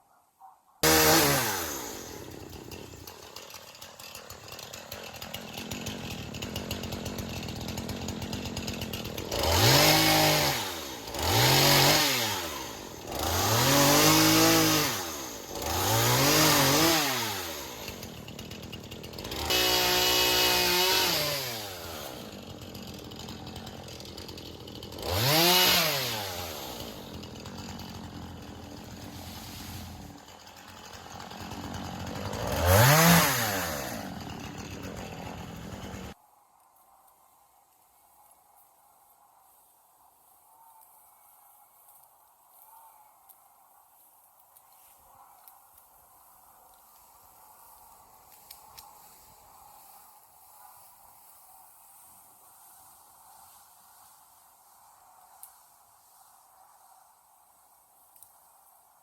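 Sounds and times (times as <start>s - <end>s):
pole saw motor revving: 0.8s - 36.2s.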